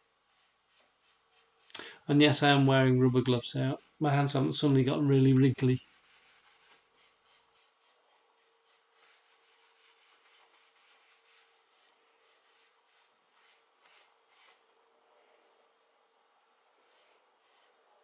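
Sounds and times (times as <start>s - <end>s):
cloth rubbing on wood: 2.9s - 14.6s.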